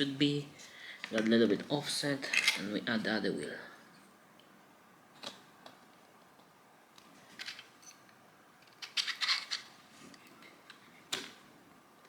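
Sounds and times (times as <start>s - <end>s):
plastic parts clicking: 8.6s - 11.4s.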